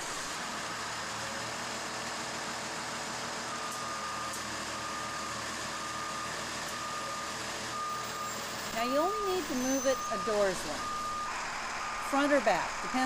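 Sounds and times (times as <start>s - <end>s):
bus engine idling: 0.0s - 13.0s
reversing alarm beeping: 3.5s - 13.0s.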